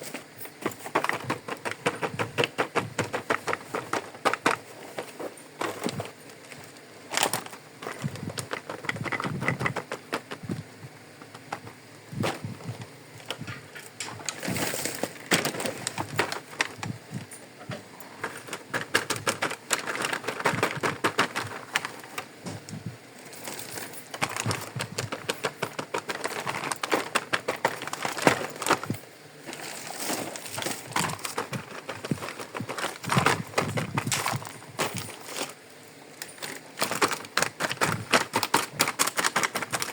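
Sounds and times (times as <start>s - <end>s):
plastic toy pieces clicking: 7.2s - 10.4s, 18.2s - 21.9s, 24.2s - 28.9s, 36.4s - 39.9s.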